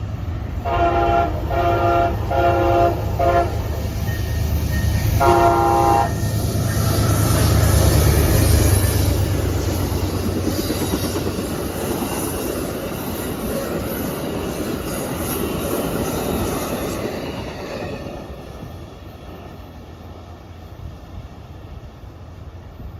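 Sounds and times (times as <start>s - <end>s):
passenger train rolling past: 0.0s - 22.9s
wheels rushing on rails: 0.0s - 22.9s.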